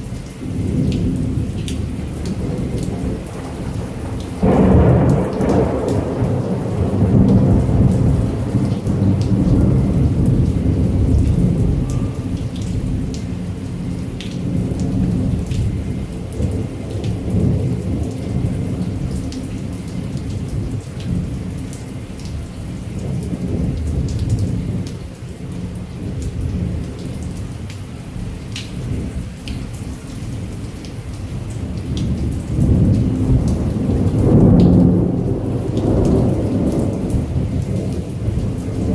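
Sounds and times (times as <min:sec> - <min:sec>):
heavy rain: 0:00.0 - 0:38.9
sharp raindrop ticks: 0:00.0 - 0:38.9
rolling thunder: 0:00.4 - 0:21.6, 0:31.6 - 0:38.9.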